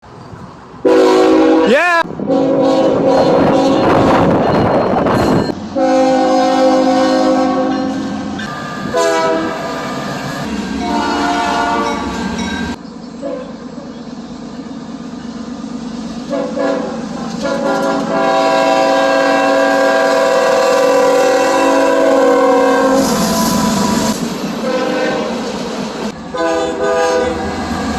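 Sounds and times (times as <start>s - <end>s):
moving train rumble: 0.0s - 27.9s
train horn blasts: 0.8s - 4.4s, 5.7s - 9.8s, 10.8s - 12.2s, 13.2s - 13.6s, 16.3s - 25.5s, 26.3s - 27.7s.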